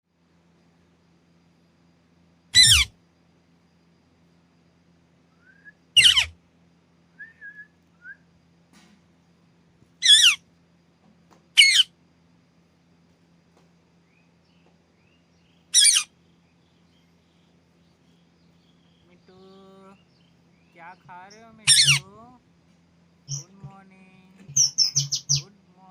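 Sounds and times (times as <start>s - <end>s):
parakeet screeching: 2.6s - 2.9s, 6.0s - 6.4s, 10.0s - 10.4s, 11.6s - 11.9s, 15.7s - 16.1s, 21.6s - 22.1s, 23.3s - 23.5s, 24.6s - 25.4s
soft short whistles: 5.4s - 6.2s, 7.2s - 8.2s.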